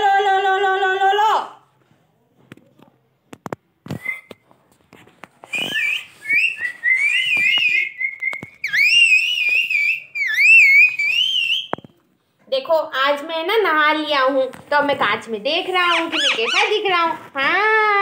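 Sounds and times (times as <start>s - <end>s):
parrot whistling: 5.5s - 11.8s, 15.9s - 16.7s.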